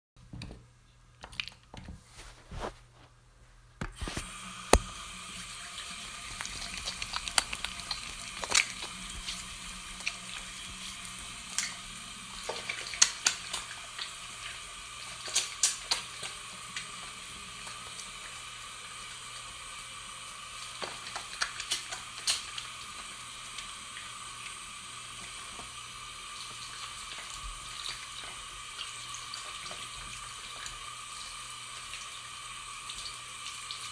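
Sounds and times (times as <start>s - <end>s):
water running from sink tap: 4.1s - 33.9s
hands splashing under water: 6.2s - 10.8s.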